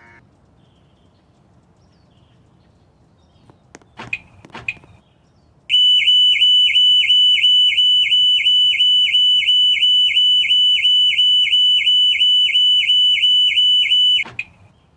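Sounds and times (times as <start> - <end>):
car alarm siren: 5.7 - 14.6.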